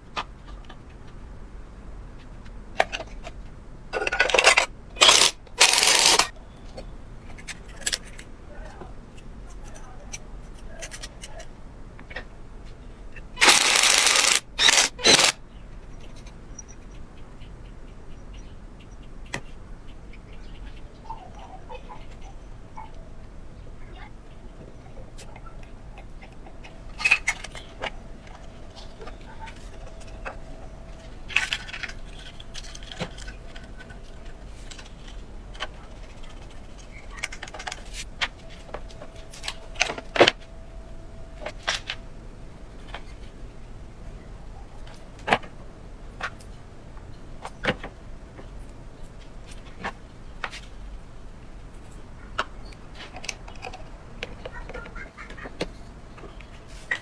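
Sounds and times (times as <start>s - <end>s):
low steady background noise: 0.0s - 57.0s
sharp clicks and knocks: 4.0s - 6.3s, 13.4s - 15.4s
small metal parts clinking: 4.0s - 6.3s, 13.4s - 15.4s.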